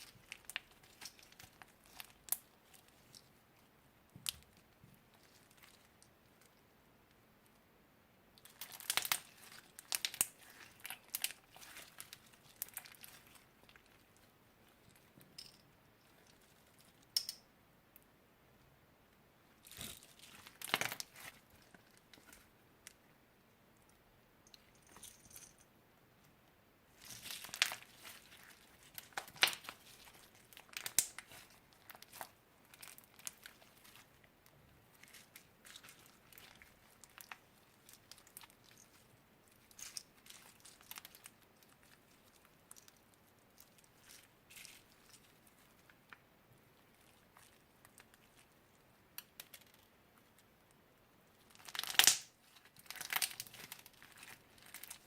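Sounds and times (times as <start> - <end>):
slime crinkling and crackling: 0.0 - 3.4, 4.1 - 6.6, 8.4 - 15.2, 19.6 - 22.5, 26.9 - 50.5, 51.3 - 55.0.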